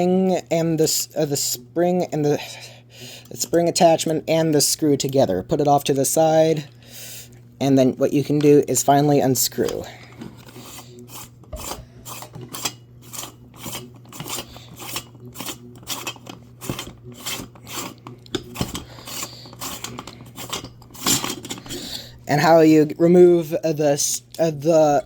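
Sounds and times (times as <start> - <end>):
metal scraping on metal: 9.6 - 22.0.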